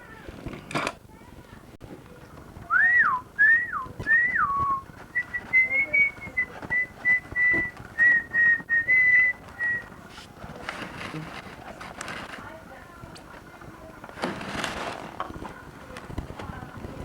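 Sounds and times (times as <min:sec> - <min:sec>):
person whistling: 0:02.7 - 0:09.9.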